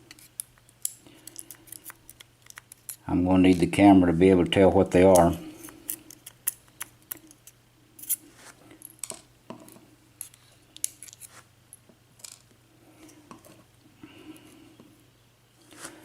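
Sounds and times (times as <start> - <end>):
small metal parts clicking: 0.1 - 3.6, 12.2 - 12.5.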